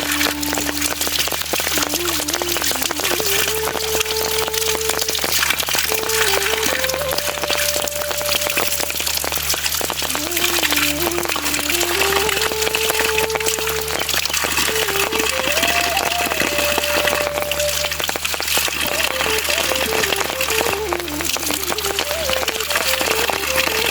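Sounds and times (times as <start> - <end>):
slow melody of held notes: 0.0 - 9.4, 10.0 - 23.9
crackling patter: 0.0 - 23.9.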